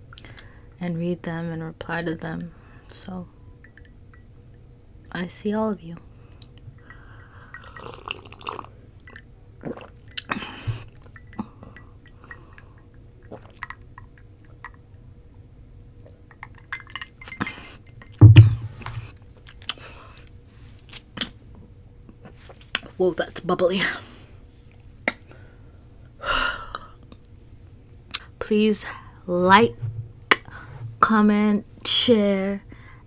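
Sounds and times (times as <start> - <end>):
glass clinking: 3.6 - 4.3, 18.2 - 19.1
loud low thump: 18.2 - 19.1, 29.4 - 31.2.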